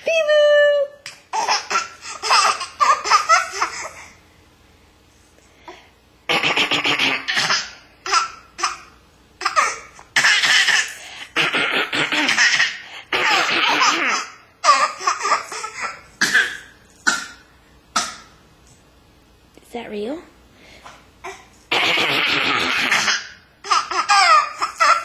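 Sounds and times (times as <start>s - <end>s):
baby laughing: 1.2s - 4.1s, 6.3s - 16.7s, 21.2s - 25.0s.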